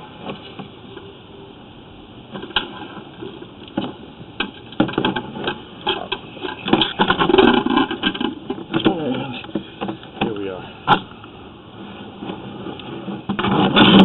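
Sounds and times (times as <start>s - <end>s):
camera clattering in a pipe: 2.4s - 11.1s.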